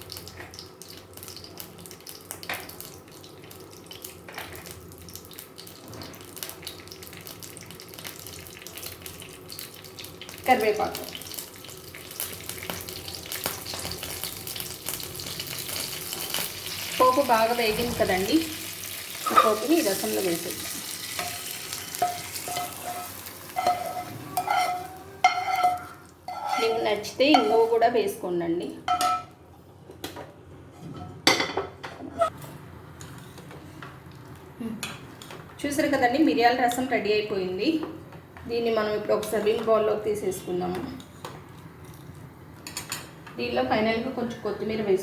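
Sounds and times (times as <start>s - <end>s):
spices sizzling in hot oil: 0.0s - 27.9s
metal spoon clinking on pot: 21.2s - 27.6s.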